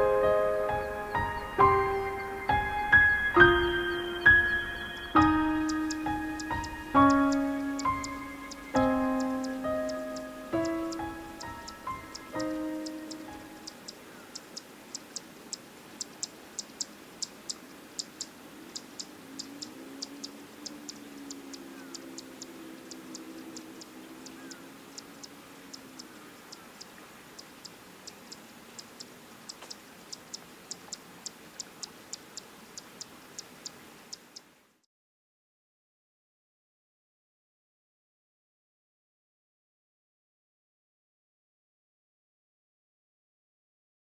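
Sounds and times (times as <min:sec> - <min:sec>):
sharp high ticking: 0:00.1 - 0:34.5.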